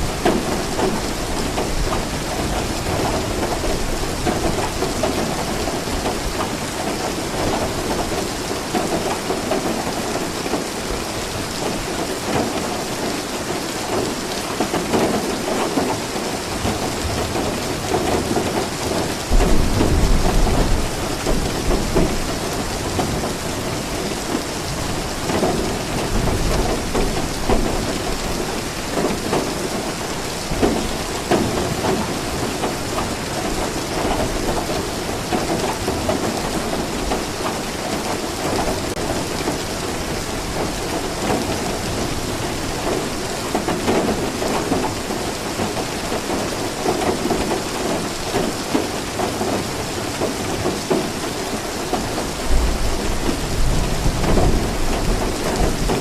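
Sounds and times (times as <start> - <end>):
steady rain falling: 0.0 - 56.0
thunder rumble: 19.3 - 23.4.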